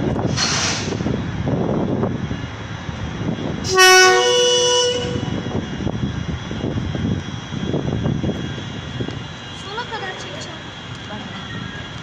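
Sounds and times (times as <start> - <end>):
steady rumbling: 0.0 - 12.0
locomotive two-tone air horn: 3.7 - 5.5.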